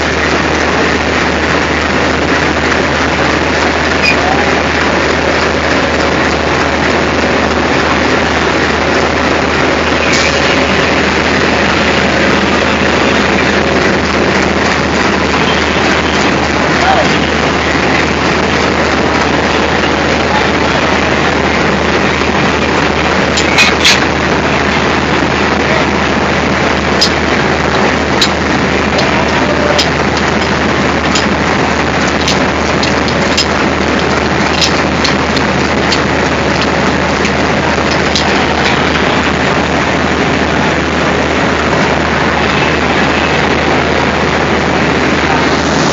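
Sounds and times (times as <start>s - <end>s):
diesel locomotive rumbling: 0.0s - 45.9s
sharp clicks: 32.0s - 38.8s.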